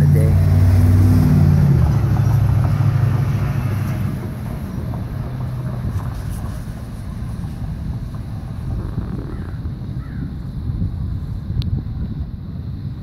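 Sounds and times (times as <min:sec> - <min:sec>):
passing vehicle engine drone: 0:00.0 - 0:10.0.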